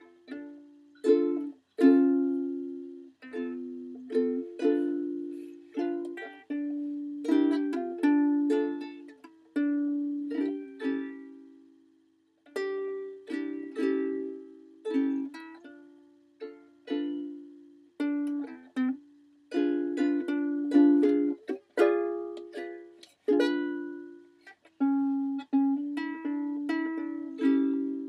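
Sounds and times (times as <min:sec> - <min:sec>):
ukulele chords: 0:00.0 - 0:28.0.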